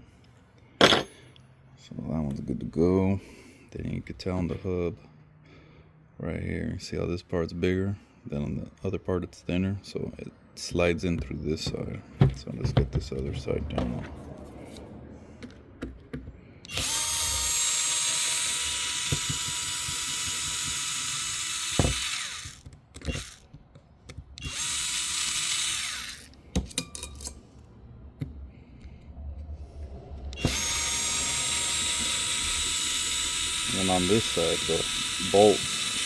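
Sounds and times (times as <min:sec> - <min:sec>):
cordless drill whine: 0:16.7 - 0:23.5, 0:24.4 - 0:26.4, 0:30.3 - 0:36.0.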